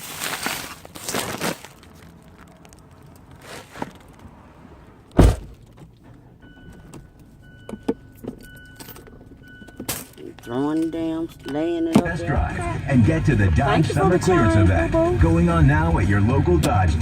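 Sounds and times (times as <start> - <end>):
loud low thump: 5.2 - 5.6.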